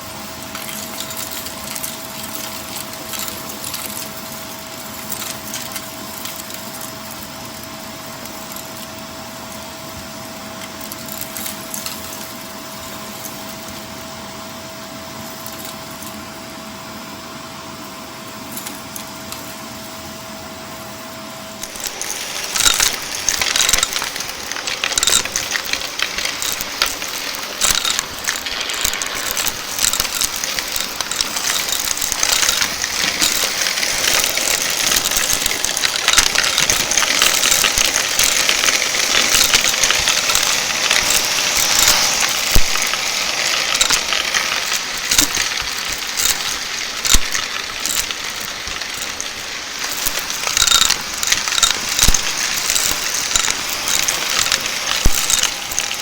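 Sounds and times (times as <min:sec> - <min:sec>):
vacuum cleaner humming and whining: 0:00.0 - 0:56.0
debris rattling up vacuum suction: 0:21.6 - 0:56.0.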